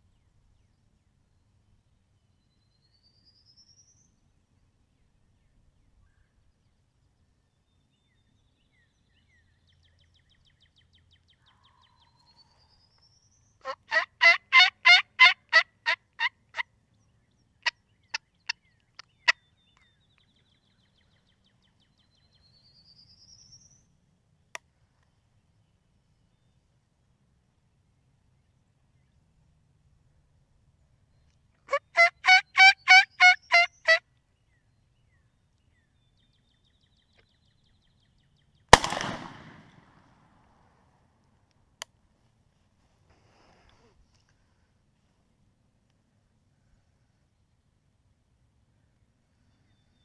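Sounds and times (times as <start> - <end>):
turkey clucks: 13.6 - 16.3, 31.7 - 34.0
turkey yelps: 13.6 - 16.3, 31.7 - 34.0.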